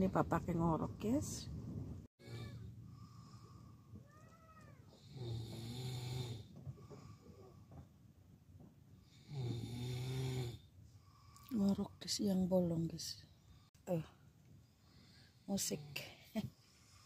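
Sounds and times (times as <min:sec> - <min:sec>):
man snoring: 0:05.0 - 0:06.5, 0:09.0 - 0:10.7.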